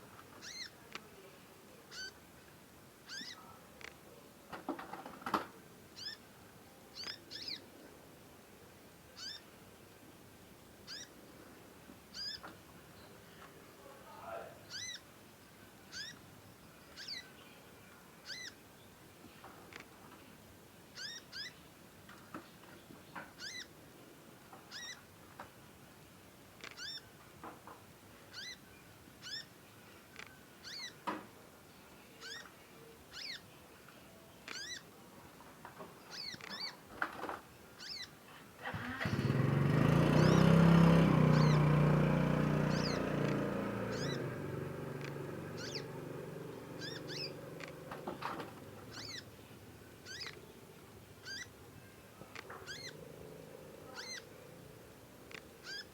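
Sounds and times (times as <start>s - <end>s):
young bird chirping: 0.4s - 0.8s, 1.9s - 2.2s, 3.1s - 3.5s, 6.0s - 6.2s, 7.0s - 7.7s, 9.2s - 9.5s, 10.9s - 11.2s, 12.1s - 12.5s, 14.7s - 15.1s, 15.9s - 16.2s, 16.9s - 17.3s, 18.2s - 18.6s, 21.0s - 21.6s, 23.4s - 23.8s, 24.7s - 25.1s, 26.6s - 27.1s, 28.3s - 29.5s, 30.6s - 31.0s, 32.2s - 33.5s, 34.5s - 34.9s, 36.1s - 36.8s, 37.8s - 38.2s, 41.3s - 41.6s, 42.7s - 44.3s, 45.0s - 46.0s, 46.8s - 47.8s, 48.8s - 50.5s, 51.2s - 51.6s, 52.4s - 53.0s, 53.9s - 54.3s, 55.3s - 55.9s.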